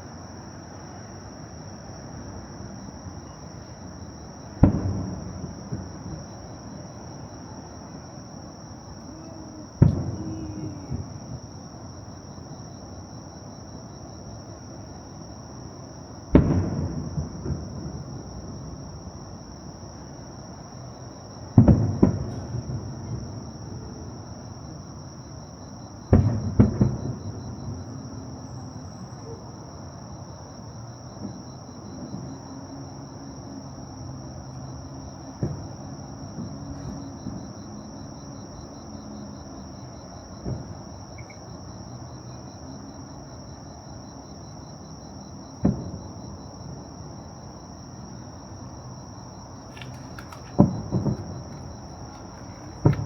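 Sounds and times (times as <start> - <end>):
insect trill: 0.0 - 53.0
fireworks booming: 4.5 - 7.2, 8.9 - 11.6, 16.3 - 18.9, 21.6 - 23.9, 26.1 - 27.9, 35.3 - 37.4, 40.4 - 40.9, 45.6 - 46.8, 49.5 - 53.0
faint firework pops: 4.6 - 6.3, 9.8 - 11.5, 16.3 - 18.0, 21.6 - 23.3, 26.1 - 27.8, 35.4 - 35.8, 40.4 - 41.3, 45.6 - 46.1, 49.6 - 53.0.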